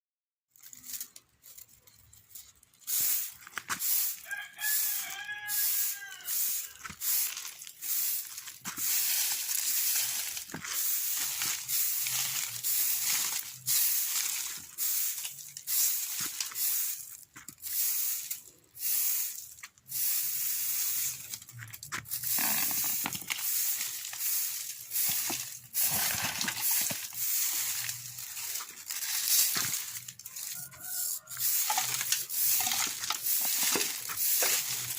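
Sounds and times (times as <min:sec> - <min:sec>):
scratchy scraping and rubbing: 0:00.6 - 0:18.4, 0:20.6 - 0:34.9
rooster crowing: 0:04.2 - 0:06.9, 0:30.2 - 0:33.0.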